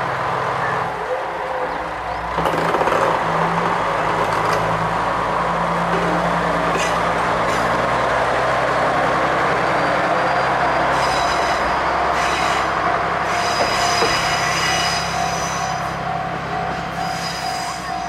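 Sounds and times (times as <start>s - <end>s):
diesel railcar engine: 0.0s - 18.0s
high thin wheel squeal: 9.8s - 16.0s, 16.7s - 18.0s.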